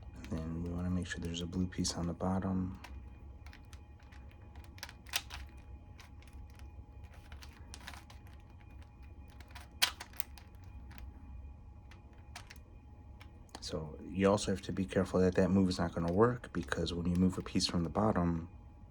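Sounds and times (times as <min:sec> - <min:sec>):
plastic puzzle cube clicking: 0:02.8 - 0:11.0, 0:12.1 - 0:12.6.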